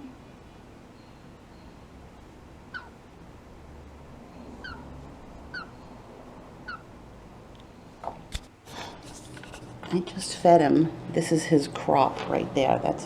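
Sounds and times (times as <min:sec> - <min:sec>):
parrot chick peeping: 0:01.6 - 0:03.1, 0:03.8 - 0:07.0.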